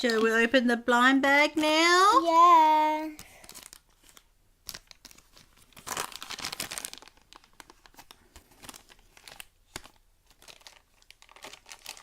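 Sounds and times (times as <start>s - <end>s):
packaging crinkling: 0.0s - 0.5s, 3.1s - 12.0s
packaging tearing: 3.2s - 12.0s.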